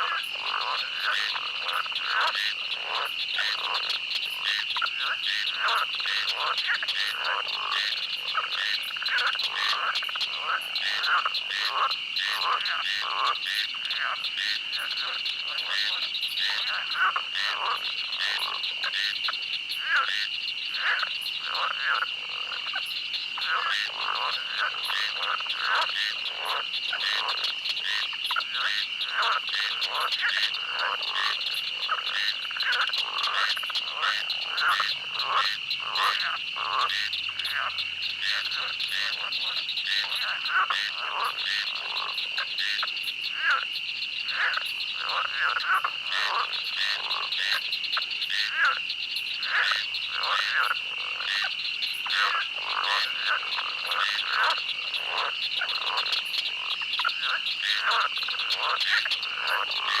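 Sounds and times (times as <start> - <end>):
frogs croaking: 0.0 - 60.0.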